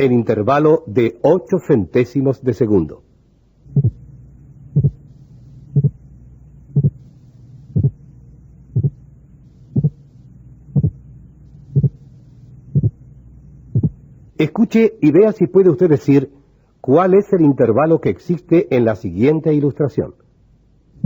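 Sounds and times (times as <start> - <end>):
steady low hum: 0.0 - 21.0
heartbeat thuds: 3.6 - 14.1.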